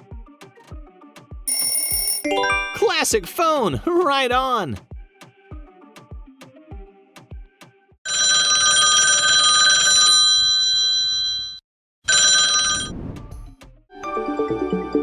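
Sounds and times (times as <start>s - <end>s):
telephone bell ringtone: 1.5s - 3.0s, 8.1s - 12.9s.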